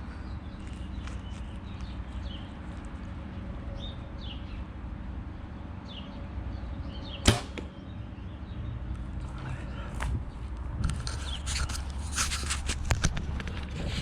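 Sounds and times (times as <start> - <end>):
songbird chirps: 0.0 - 12.0
arrow crack: 7.2 - 7.7.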